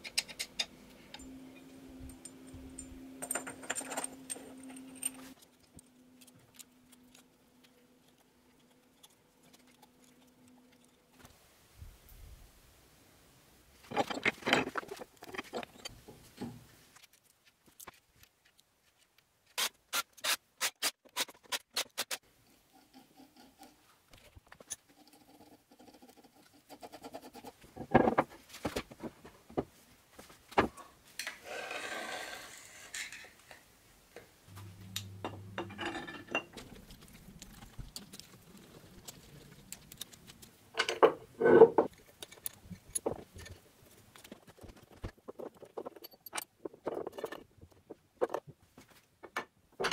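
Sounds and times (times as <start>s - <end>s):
metal parts and tools knocking: 2.2s - 5.2s, 35.0s - 36.8s
brief low hum: 34.5s - 35.6s.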